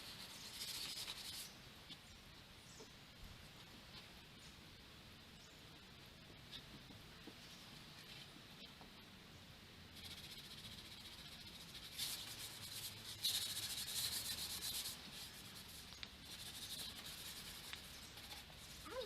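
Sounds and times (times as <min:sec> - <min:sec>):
paint applicator rubbing on wood: 0:10.0 - 0:19.0.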